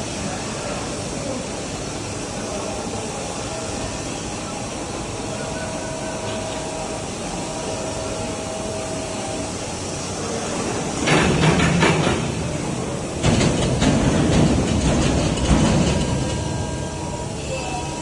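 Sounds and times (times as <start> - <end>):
faint machine whine: 2.4 - 11.0, 13.9 - 18.0.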